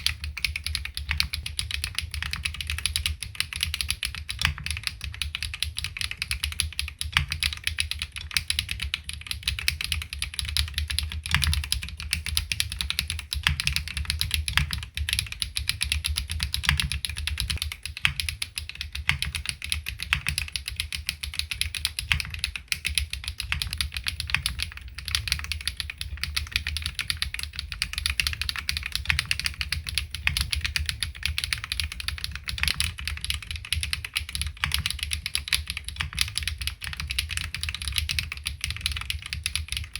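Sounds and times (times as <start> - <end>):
rapid mechanical keyboard typing: 0.0 - 39.9.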